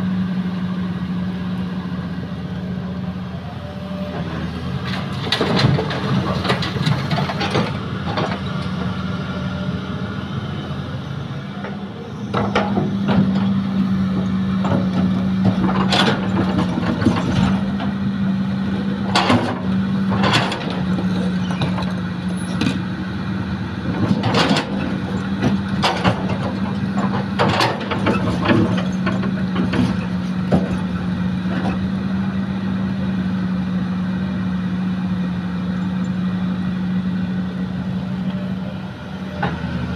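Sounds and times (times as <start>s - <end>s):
heavy machinery diesel engine: 0.0s - 39.9s
metal clanks and knocks: 4.9s - 8.4s, 14.6s - 17.9s, 19.1s - 22.8s, 24.0s - 31.0s.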